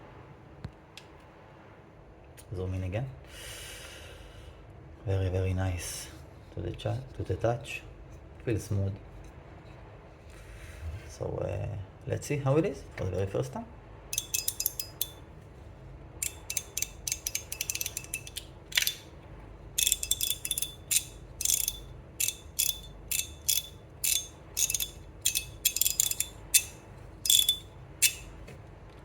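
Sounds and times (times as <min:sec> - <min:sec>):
fidget slider clacking: 0:14.2 - 0:15.2, 0:16.2 - 0:19.1, 0:19.8 - 0:28.4.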